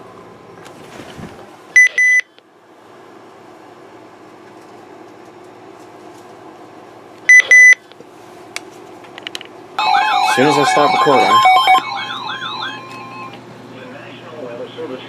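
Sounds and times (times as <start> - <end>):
double electronic beeps: 9.8 - 13.4
faint steady hum: 9.8 - 13.5.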